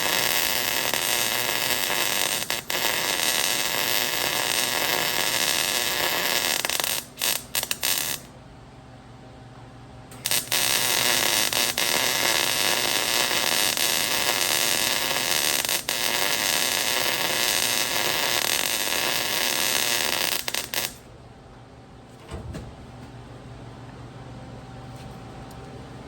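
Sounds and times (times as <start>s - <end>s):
welding arc crackling hiss: 0.0s - 8.3s, 10.2s - 21.1s.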